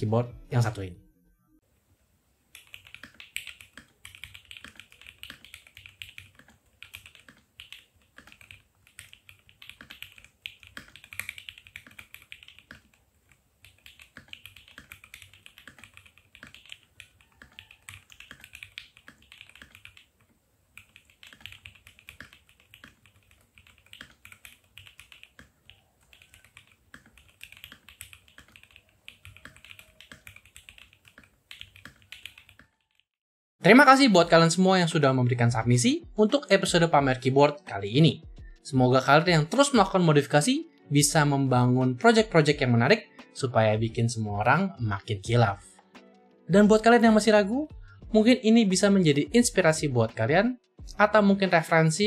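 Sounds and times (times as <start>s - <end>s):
keyboard typing: 2.5s - 33.1s.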